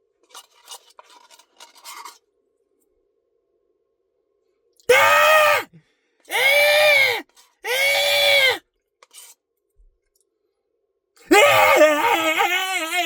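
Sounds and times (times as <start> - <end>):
man moaning: 4.9 - 5.7, 6.3 - 8.6, 11.3 - 13.0.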